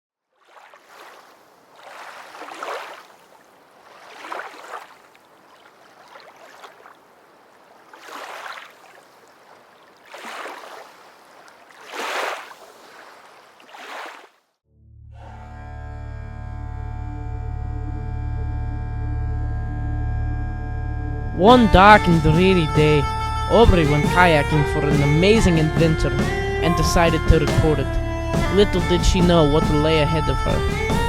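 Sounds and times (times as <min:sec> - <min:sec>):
paddle splashing: 0:00.3 - 0:14.5
moving water wash: 0:00.4 - 0:14.4.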